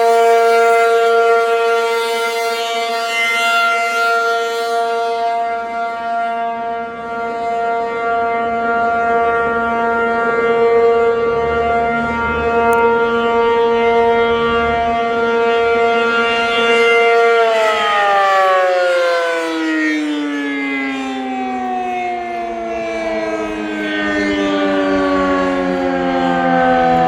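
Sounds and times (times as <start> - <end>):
warning siren: 0.0 - 27.0.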